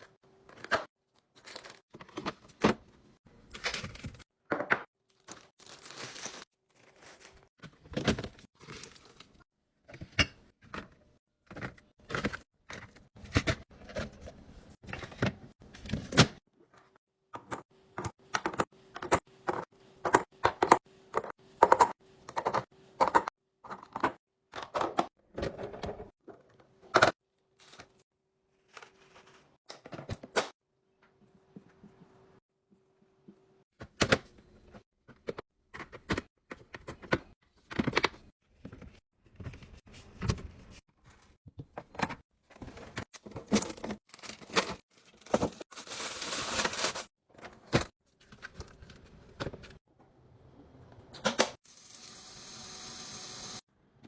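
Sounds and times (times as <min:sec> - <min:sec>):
kitchen containers clacking and knocking: 0:17.3 - 0:27.2.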